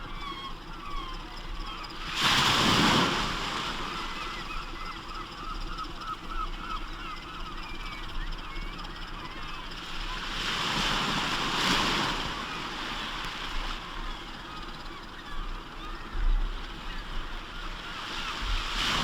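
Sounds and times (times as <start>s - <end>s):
birds chattering: 3.7s - 10.3s, 13.4s - 18.7s.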